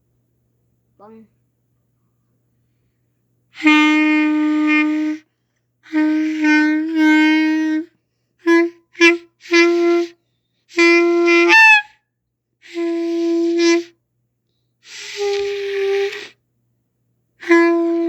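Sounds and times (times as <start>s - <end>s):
clarinet notes: 3.6s - 5.2s, 5.8s - 11.9s, 12.6s - 13.9s, 14.9s - 16.3s, 17.4s - 18.0s.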